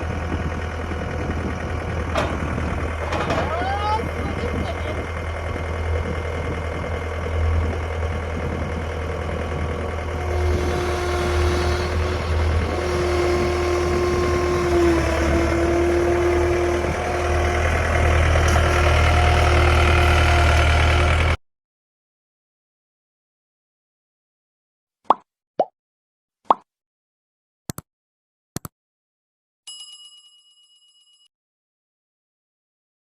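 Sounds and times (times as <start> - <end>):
diesel engine running: 0.0 - 21.4
steady whine: 2.0 - 21.1.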